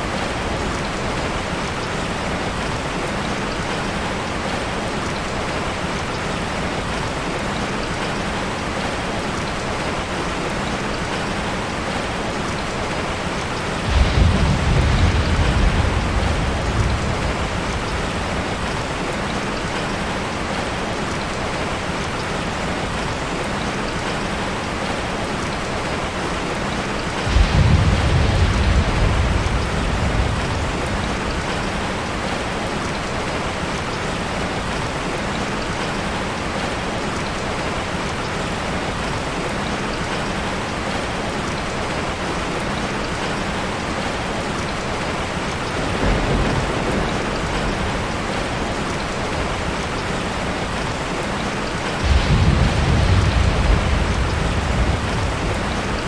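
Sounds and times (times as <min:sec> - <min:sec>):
heavy rain: 0:00.0 - 0:56.0
thunder rumbling: 0:13.5 - 0:19.9, 0:27.2 - 0:32.8, 0:45.6 - 0:56.0.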